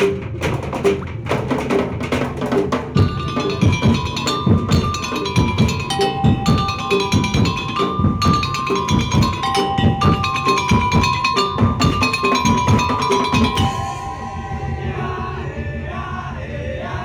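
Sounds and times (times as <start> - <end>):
wooden knocks and drum beats: 2.6 - 14.3
held stepping melody: 3.0 - 14.8.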